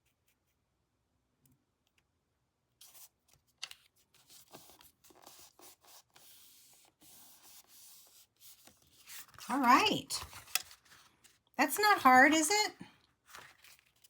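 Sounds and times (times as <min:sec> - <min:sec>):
cardstock rustling and scraping: 0:02.8 - 0:12.5, 0:13.2 - 0:14.0.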